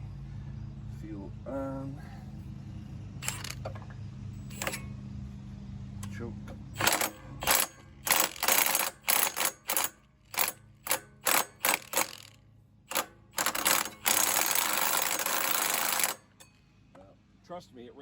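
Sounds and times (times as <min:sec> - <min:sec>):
impact wrench hammering: 0:03.2 - 0:05.0, 0:06.0 - 0:16.6.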